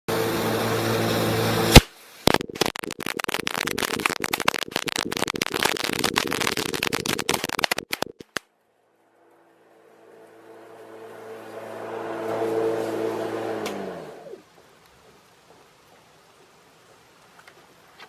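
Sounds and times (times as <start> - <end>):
firecrackers crackling: 1.7 - 8.7.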